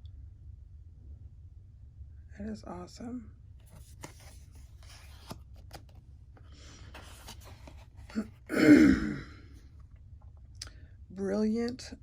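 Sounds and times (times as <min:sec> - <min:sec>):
cards rustling and clicking: 0:03.6 - 0:08.2
woman clearing her throat: 0:08.5 - 0:09.4.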